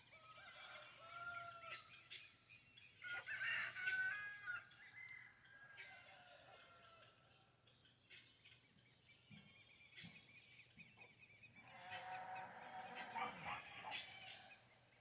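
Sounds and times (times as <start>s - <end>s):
small birds chirping: 4.3s - 15.0s
poultry calling: 11.5s - 14.8s.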